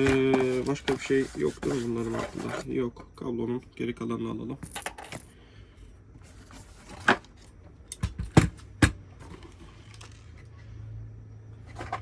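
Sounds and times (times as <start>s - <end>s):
packaging knocks and clicks: 0.0s - 1.1s
low steady hum: 0.0s - 12.0s.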